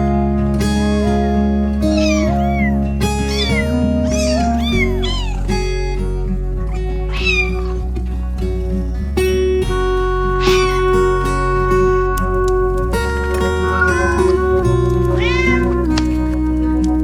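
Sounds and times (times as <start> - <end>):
background music with held notes: 0.0 - 17.0
cat meowing: 1.9 - 5.7, 6.6 - 7.9, 10.4 - 11.0, 13.7 - 14.4, 15.1 - 15.9.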